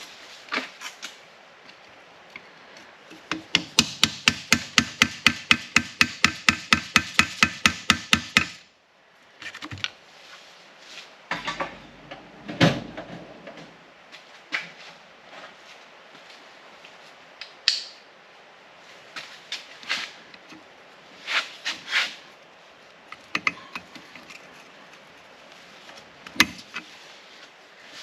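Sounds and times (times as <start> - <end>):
fast hammer blows on metal: 3.3 - 8.6.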